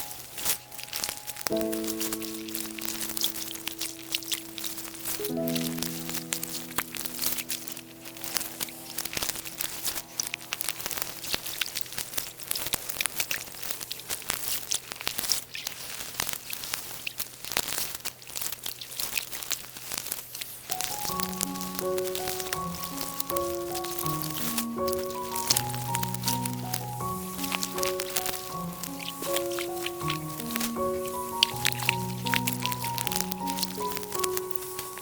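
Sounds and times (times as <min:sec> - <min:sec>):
faint background music: 0:00.0 - 0:12.7, 0:20.7 - 0:35.0
plant material crackling and crunching: 0:00.0 - 0:35.0.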